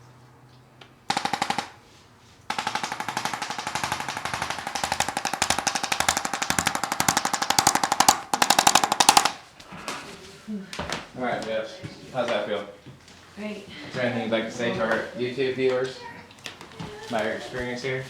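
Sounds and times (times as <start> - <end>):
electric percussion tool hammering: 1.1 - 1.8, 2.5 - 9.5.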